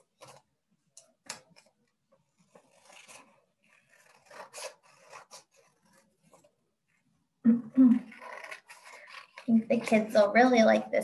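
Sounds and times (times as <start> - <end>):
paper rustling: 0.0 - 6.6.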